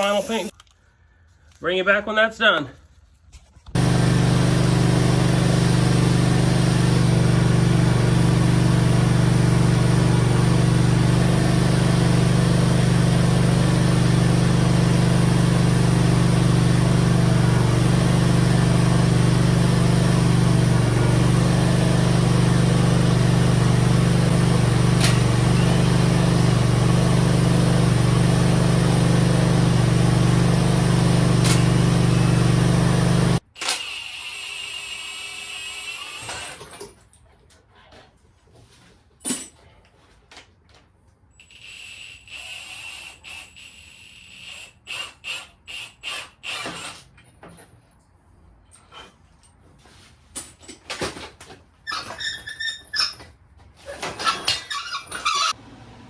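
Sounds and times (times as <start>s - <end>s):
machine motor drone: 3.8s - 33.7s.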